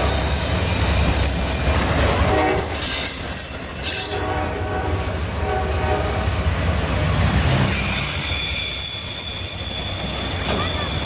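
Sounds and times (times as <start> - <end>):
passing train rumble: 0.0 - 11.0
high-pitched wheel squeal: 1.1 - 1.9, 2.5 - 4.3, 7.7 - 11.0
locomotive horn blasts: 2.2 - 3.0, 3.9 - 6.4.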